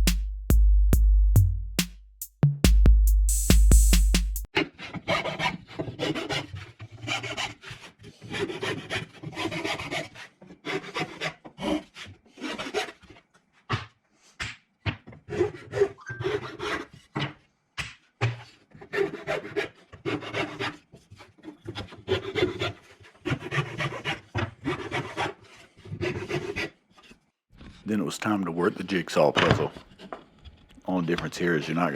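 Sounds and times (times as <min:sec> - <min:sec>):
rubbing strokes on plywood: 0:05.2 - 0:13.2, 0:18.8 - 0:26.7.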